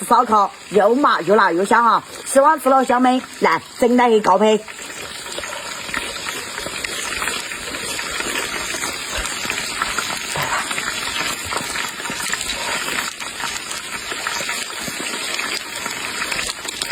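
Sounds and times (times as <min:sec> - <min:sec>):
running water rushing: 0:00.0 - 0:16.9.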